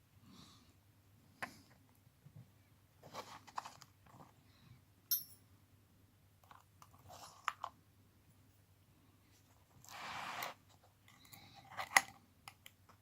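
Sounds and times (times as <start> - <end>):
sharp metal clink: 5.1 - 5.4
tools rustling and clicking: 5.1 - 5.4.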